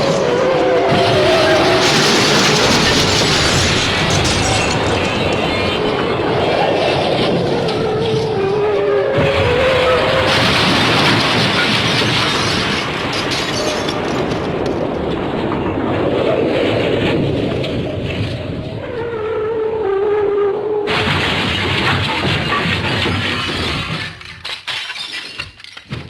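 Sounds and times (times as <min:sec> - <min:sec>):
rumbling cartoon crash: 0:00.0 - 0:19.0, 0:20.9 - 0:26.0.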